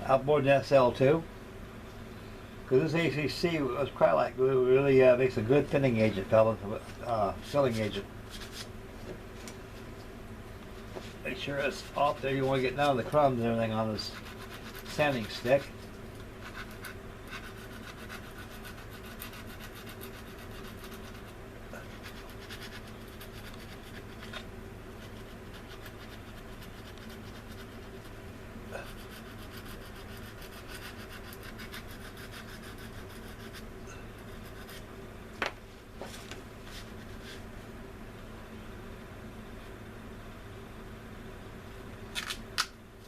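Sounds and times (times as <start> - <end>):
sanding stick scratching plastic: 11.9 - 15.7, 16.4 - 28.2, 28.8 - 33.7, 34.3 - 34.9.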